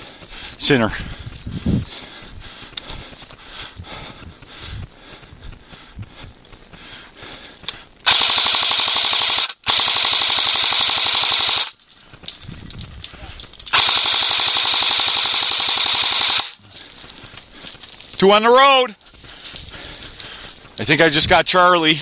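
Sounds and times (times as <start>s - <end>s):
airsoft rifle firing bursts: 8.0s - 11.8s, 13.7s - 16.6s.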